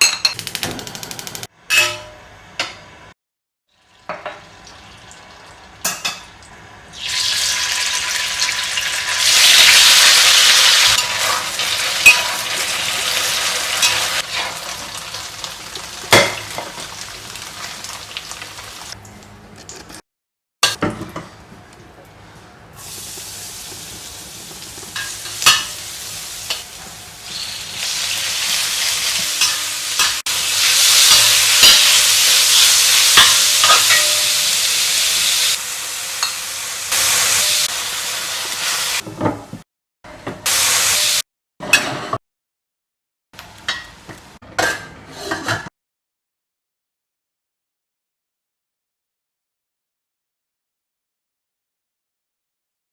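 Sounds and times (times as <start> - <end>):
utensils clacking on a pan: 1.7 - 2.8, 10.8 - 15.0, 23.7 - 27.9, 28.5 - 34.6
food sizzling in a pan: 3.8 - 19.0, 22.8 - 39.0, 40.4 - 41.2.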